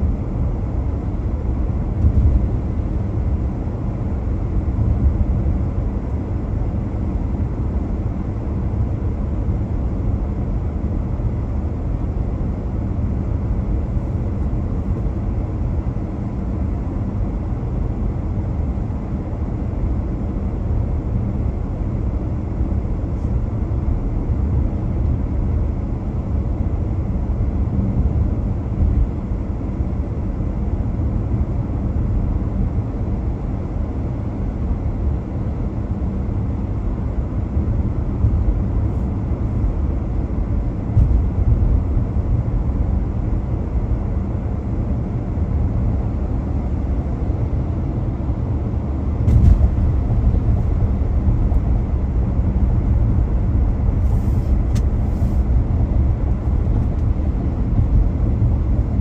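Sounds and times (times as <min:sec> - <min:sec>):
car driving road rumble: 0:00.0 - 0:08.8, 0:09.4 - 0:32.6, 0:37.0 - 0:45.0, 0:46.5 - 0:59.0
car bump: 0:49.2 - 0:51.7.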